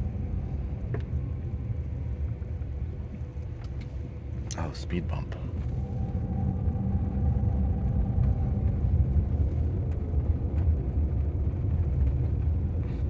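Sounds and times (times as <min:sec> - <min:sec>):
road and tyre rumble: 0:00.0 - 0:13.0.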